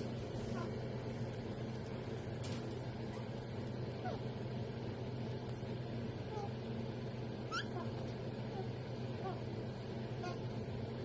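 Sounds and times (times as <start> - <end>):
steady low hum: 0.0 - 11.0
parrot chirps: 7.4 - 8.6.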